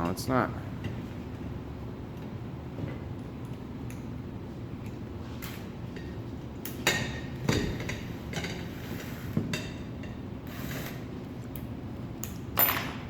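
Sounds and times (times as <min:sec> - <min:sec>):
metal parts knocking and clinking: 0:12.2 - 0:13.0.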